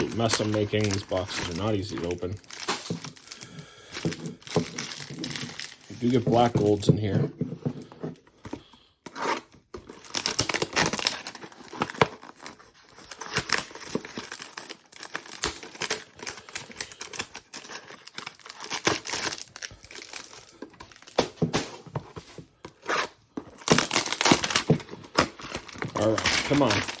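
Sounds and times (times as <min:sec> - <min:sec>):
cardboard boxes tearing: 0:00.0 - 0:03.4, 0:09.1 - 0:27.0
packs crinkling: 0:00.0 - 0:07.2, 0:09.8 - 0:27.0.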